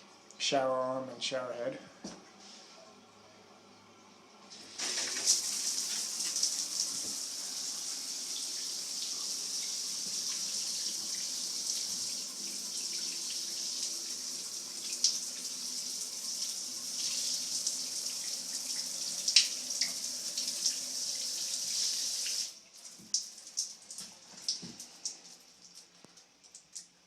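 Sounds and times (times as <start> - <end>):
shower water spraying: 4.5 - 22.5.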